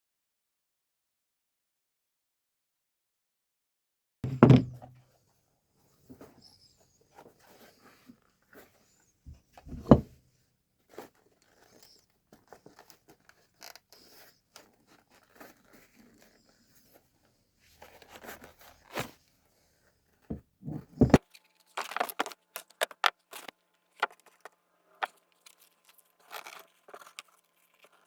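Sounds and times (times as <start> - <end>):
sharp knocks on bench: 4.2 - 5.0, 9.7 - 10.1, 20.6 - 21.2.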